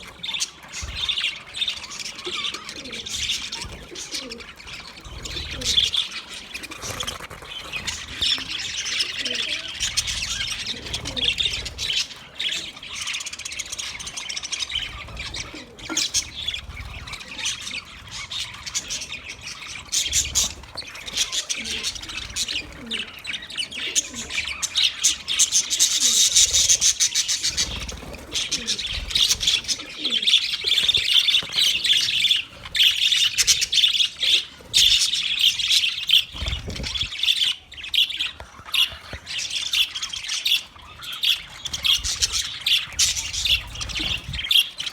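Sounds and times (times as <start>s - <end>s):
budgerigars chirping and warbling: 0.0s - 44.9s.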